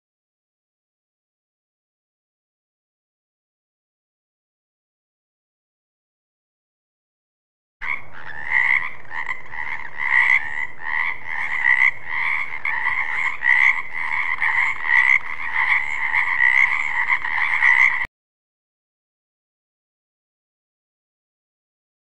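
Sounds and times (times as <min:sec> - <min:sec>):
frogs croaking: 0:07.8 - 0:18.1.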